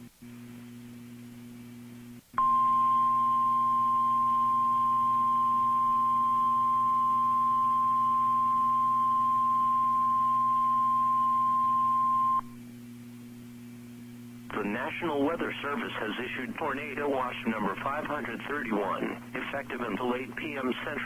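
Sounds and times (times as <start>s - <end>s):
low steady hum: 0.0s - 21.0s
steady high-pitched alarm tone: 2.4s - 12.4s.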